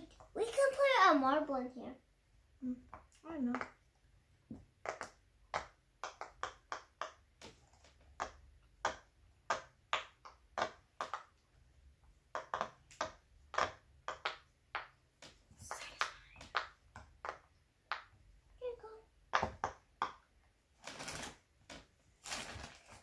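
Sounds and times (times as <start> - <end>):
fidget toy bubbles popping: 4.7 - 11.4, 12.3 - 15.0.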